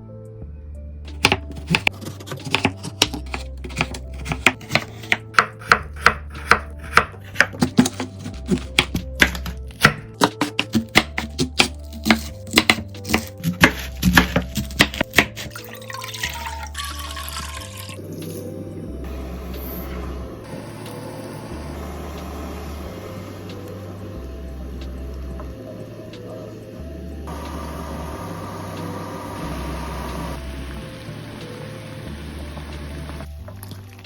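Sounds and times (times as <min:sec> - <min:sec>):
knife chopping on cutting board: 0:01.1 - 0:15.6.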